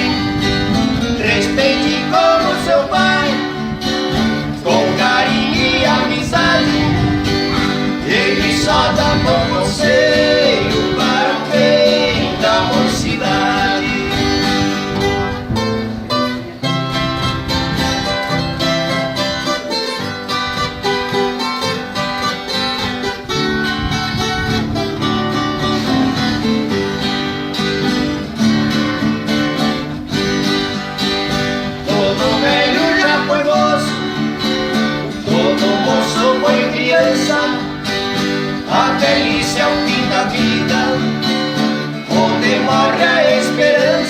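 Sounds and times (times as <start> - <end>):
acoustic guitars plucking melody: 0.0 - 44.0.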